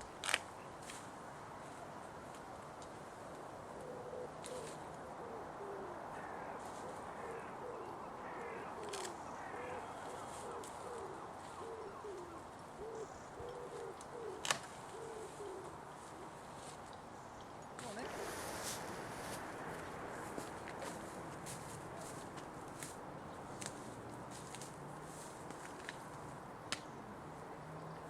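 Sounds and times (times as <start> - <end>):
bird hooting: 3.7 - 16.4, 17.9 - 22.9
birds chirping: 17.2 - 24.4.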